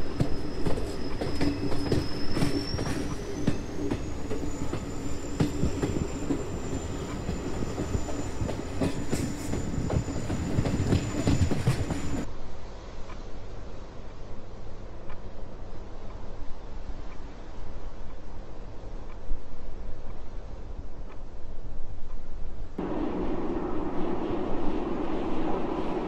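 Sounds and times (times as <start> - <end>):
train wheel clicks: 0.0 - 12.3
train rumbling on rails: 0.0 - 19.0, 22.7 - 26.0.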